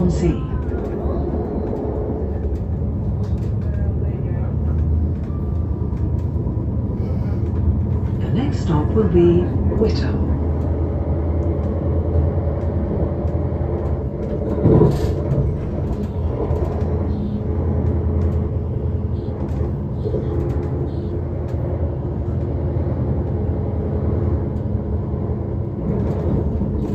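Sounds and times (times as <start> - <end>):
train carriage rumble: 0.0 - 26.9.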